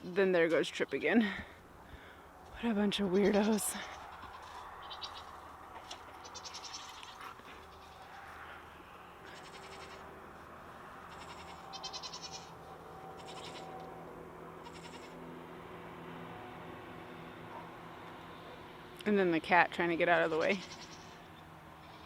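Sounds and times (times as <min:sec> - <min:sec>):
goats bleating: 0:03.1 - 0:08.4, 0:09.2 - 0:10.1, 0:11.1 - 0:12.5, 0:13.2 - 0:13.9, 0:14.6 - 0:15.2.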